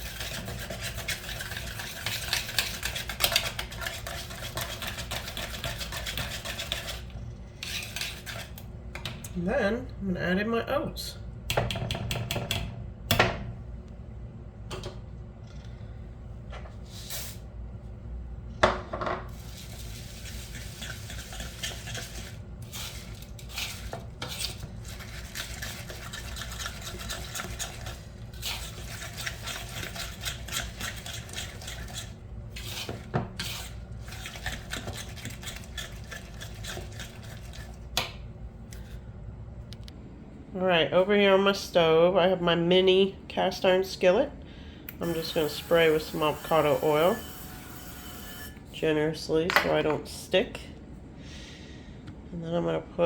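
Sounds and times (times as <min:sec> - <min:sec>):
utensil stirring batter in bowl: 0:00.0 - 0:09.1, 0:19.3 - 0:38.0, 0:45.0 - 0:47.2.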